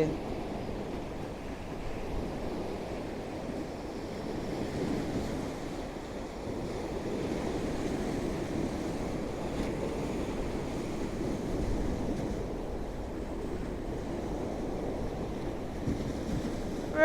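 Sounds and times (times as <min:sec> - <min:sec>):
waves washing against steps: 0:00.0 - 0:17.0
wind on microphone: 0:00.0 - 0:17.0.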